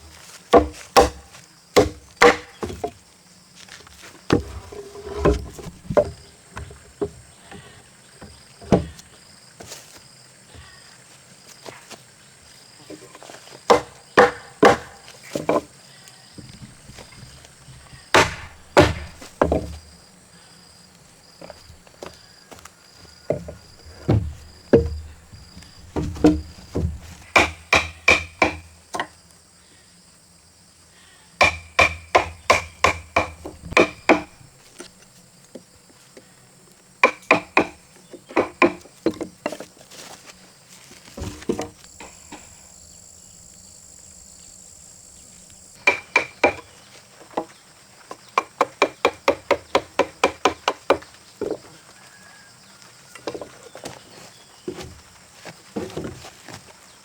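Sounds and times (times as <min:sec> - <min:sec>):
hammer blows on timber: 0:00.6 - 0:02.9, 0:13.7 - 0:15.6, 0:16.4 - 0:19.8, 0:23.4 - 0:28.8, 0:31.4 - 0:34.5, 0:45.8 - 0:46.7.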